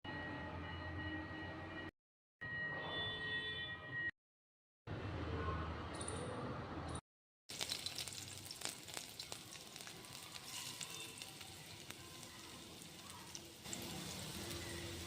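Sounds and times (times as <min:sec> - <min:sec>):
food sizzling in hot oil: 0:07.5 - 0:15.0.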